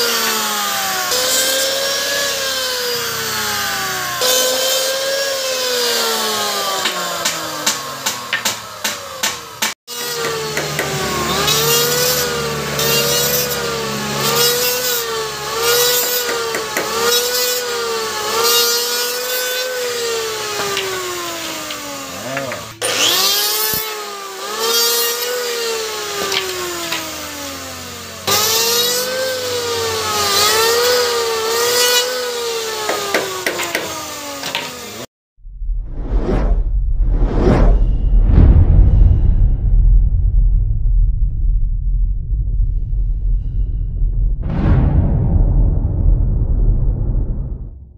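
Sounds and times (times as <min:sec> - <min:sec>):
electric planer cutting wood: 0:00.0 - 0:35.1.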